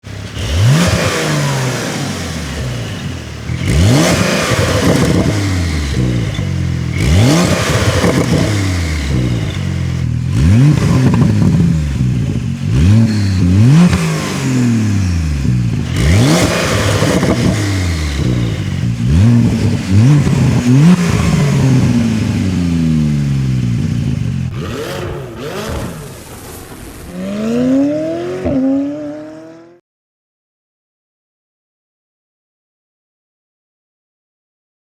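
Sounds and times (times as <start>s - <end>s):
car engine revving: 0.0s - 29.8s.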